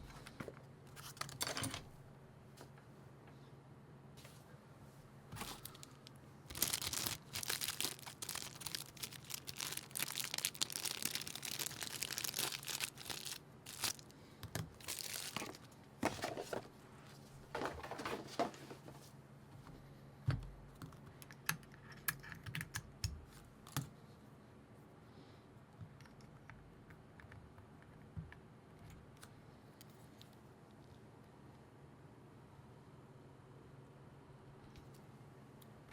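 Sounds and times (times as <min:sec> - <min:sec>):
packaging crinkling and tearing: 0:05.4 - 0:16.5
rustles and light knocks: 0:15.3 - 0:20.5.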